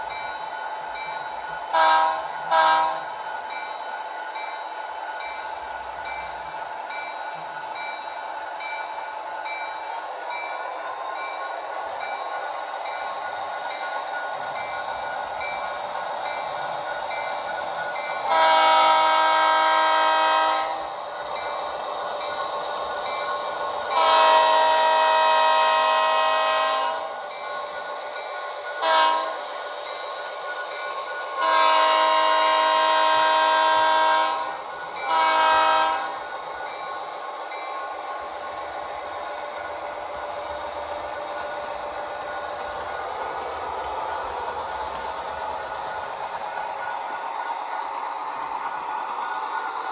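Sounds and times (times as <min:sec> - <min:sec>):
locomotive engine running: 0:00.0 - 0:49.9
locomotive horn blast: 0:01.8 - 0:03.0, 0:18.3 - 0:20.8, 0:23.9 - 0:27.1, 0:28.8 - 0:29.4, 0:31.4 - 0:36.2.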